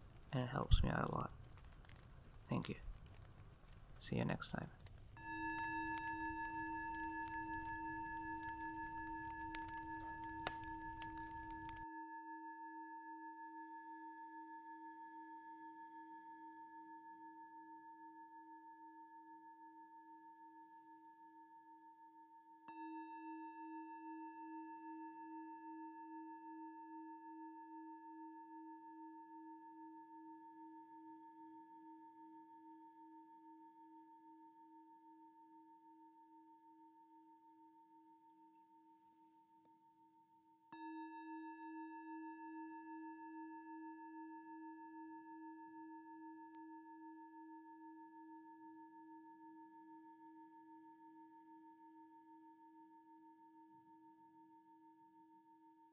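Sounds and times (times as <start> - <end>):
singing bowl ringing: 5.2 - 36.4, 40.7 - 53.1.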